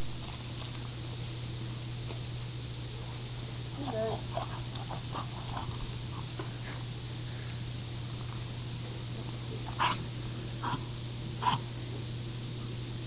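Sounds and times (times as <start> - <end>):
puppies growling and whining: 9.3 - 10.0
puppy barking: 9.7 - 10.0, 10.6 - 10.8, 11.4 - 11.6.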